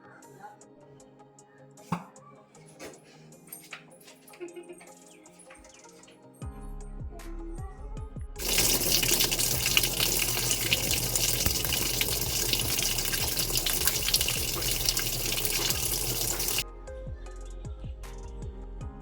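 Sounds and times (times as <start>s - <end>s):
water running in washing machine: 8.4s - 16.6s.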